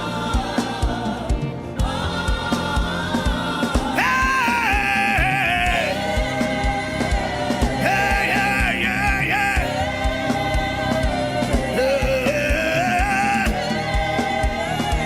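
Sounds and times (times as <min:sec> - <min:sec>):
steady drum beat: 0:00.0 - 0:15.0
sustained instrumental chords: 0:00.0 - 0:15.0
person singing: 0:04.0 - 0:06.2, 0:07.6 - 0:09.9, 0:11.6 - 0:13.9.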